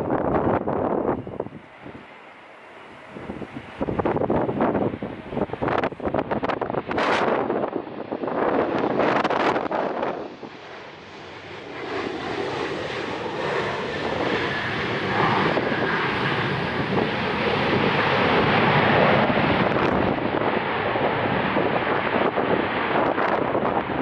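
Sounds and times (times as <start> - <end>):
faint high whine: 0.0 - 6.6
jet engines rushing: 0.0 - 24.0
wind buffeting microphone: 0.0 - 24.0.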